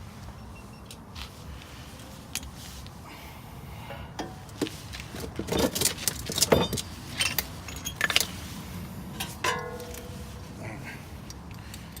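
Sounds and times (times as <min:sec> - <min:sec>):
metal tools clinking: 0:04.2 - 0:08.5, 0:09.2 - 0:10.6
steady low hum: 0:06.8 - 0:12.0.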